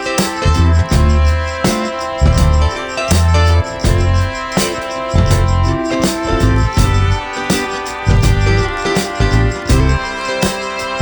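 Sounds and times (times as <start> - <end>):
background music with heavy bass: 0.0 - 11.0.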